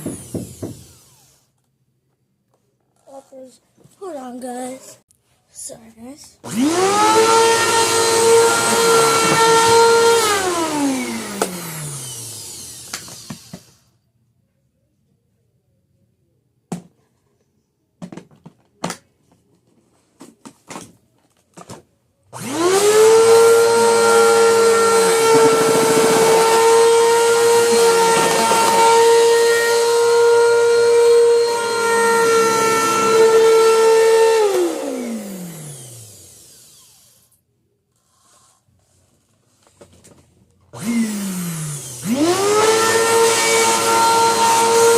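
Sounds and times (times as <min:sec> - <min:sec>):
vacuum cleaner motor whining: 0:00.0 - 0:01.6, 0:06.4 - 0:13.9, 0:22.3 - 0:37.3, 0:39.8 - 0:44.9.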